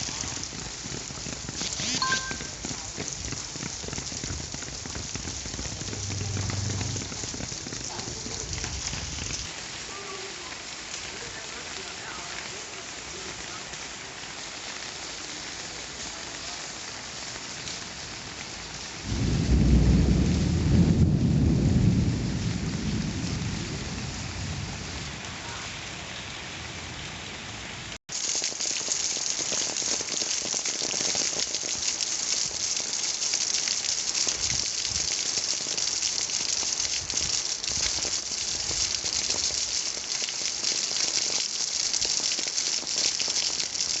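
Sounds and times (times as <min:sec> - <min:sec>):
steady rain falling: 0:00.0 - 0:44.0
thunder rumbling: 0:02.3 - 0:09.5, 0:19.0 - 0:27.0.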